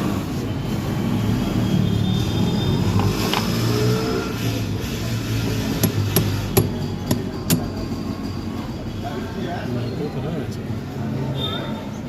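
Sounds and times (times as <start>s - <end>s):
hammer blows on metal gearbox: 5.7s - 7.9s.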